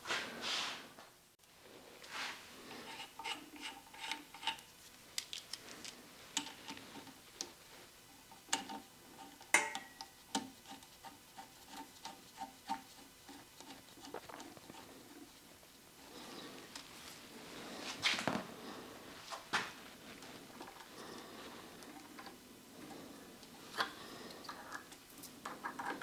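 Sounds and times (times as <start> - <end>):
small parts clicking and clinking: 5.2 - 6.8.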